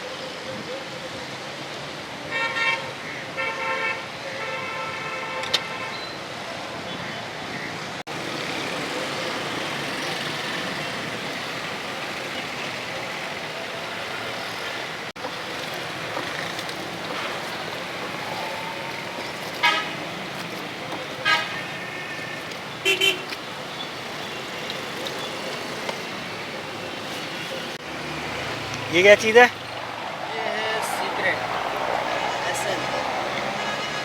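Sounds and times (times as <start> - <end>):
road traffic: 0.0 - 34.0
vehicle horn toots: 18.5 - 20.3, 21.2 - 23.3.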